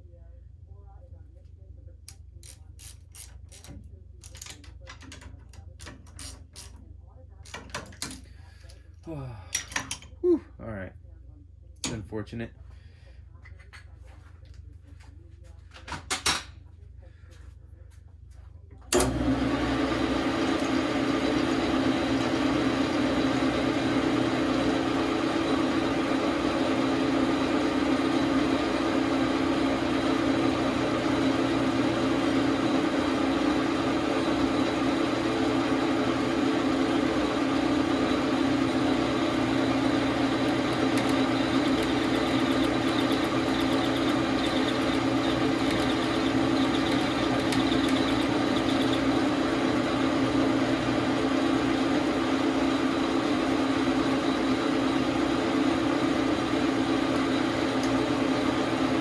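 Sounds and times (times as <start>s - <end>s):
lathe motor humming: 19.0s - 59.0s.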